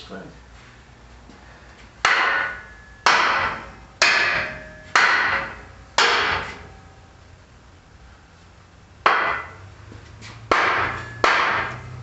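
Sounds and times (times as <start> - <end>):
hammer striking steel: 2.0 - 6.8, 9.0 - 9.6, 10.5 - 12.0.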